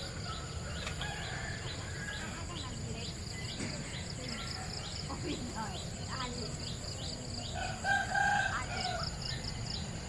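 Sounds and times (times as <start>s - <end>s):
rooster crowing: 1.0s - 2.4s, 7.6s - 9.2s.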